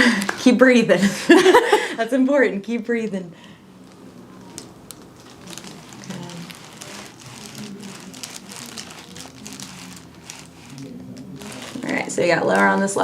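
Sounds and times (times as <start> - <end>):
soft rustling and crinkling: 2.6 - 13.0.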